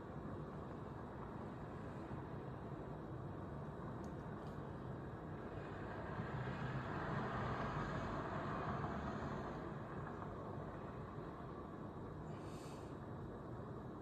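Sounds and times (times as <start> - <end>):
car driving past: 5.6 - 10.3.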